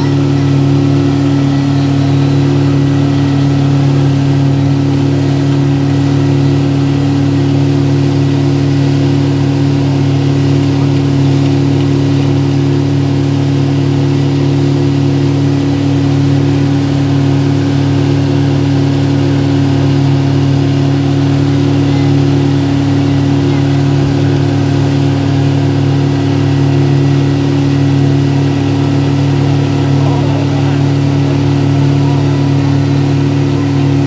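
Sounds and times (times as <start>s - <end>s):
engine humming steadily: 0.0s - 34.0s.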